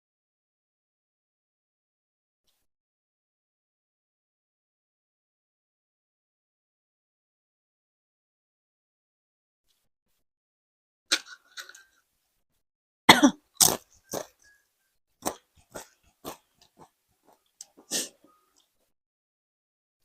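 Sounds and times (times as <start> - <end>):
person coughing: 13.1 - 13.8.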